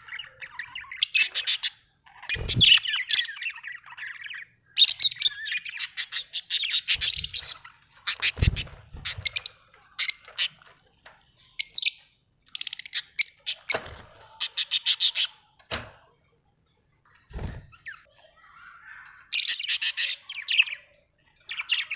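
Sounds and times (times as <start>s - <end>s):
budgerigars chirping: 0.0s - 10.6s.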